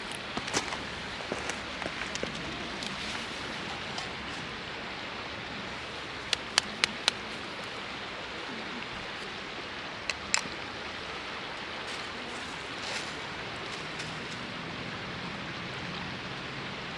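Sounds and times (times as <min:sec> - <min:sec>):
river rushing: 0:00.0 - 0:16.9
campfire wood popping: 0:06.0 - 0:07.7.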